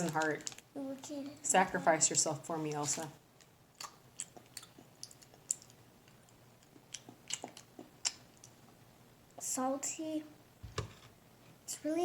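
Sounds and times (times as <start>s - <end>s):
wet mouth clicks chewing: 3.8s - 8.6s.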